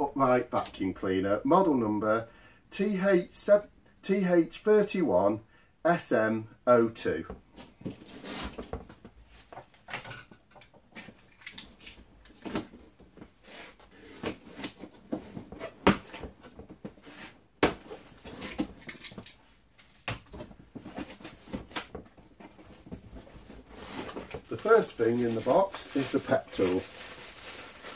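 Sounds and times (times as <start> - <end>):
packaging scrapes and rustles: 20.8 - 27.9.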